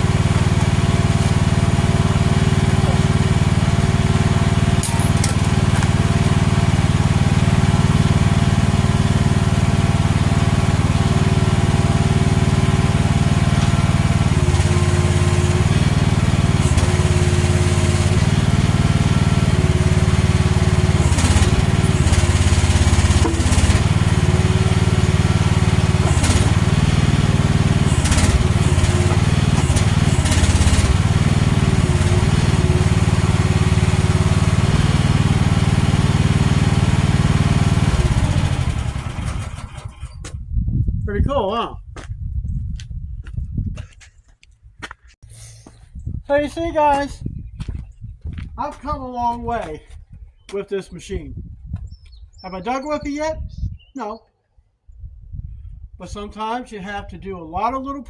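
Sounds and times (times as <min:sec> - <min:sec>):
excavator engine running: 0:00.0 - 0:40.4.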